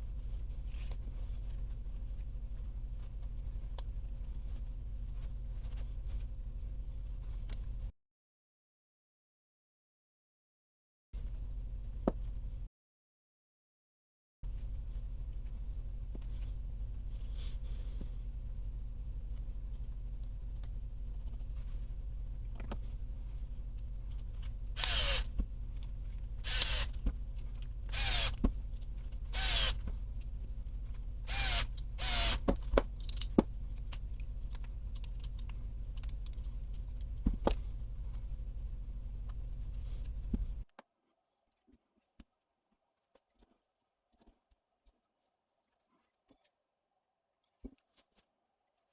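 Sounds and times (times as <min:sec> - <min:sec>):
low hum: 0:00.0 - 0:07.9, 0:11.2 - 0:12.7, 0:14.4 - 0:40.7
electric power driver motor: 0:14.6 - 0:40.6.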